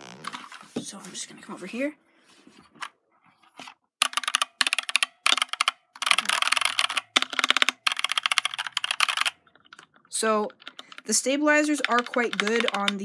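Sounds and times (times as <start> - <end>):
fast typing on mechanical keyboard: 4.0 - 13.0.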